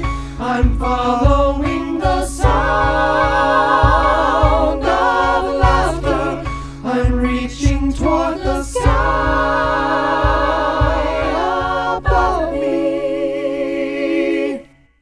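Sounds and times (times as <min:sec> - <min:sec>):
low drum beat: 0:00.0 - 0:12.8
voices singing held chord: 0:00.0 - 0:14.9.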